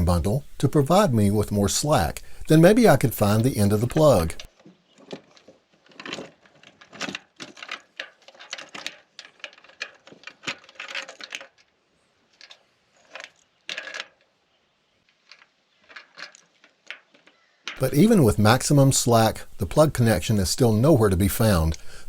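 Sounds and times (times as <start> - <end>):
grabber tool clicking and rattling: 3.8 - 11.7.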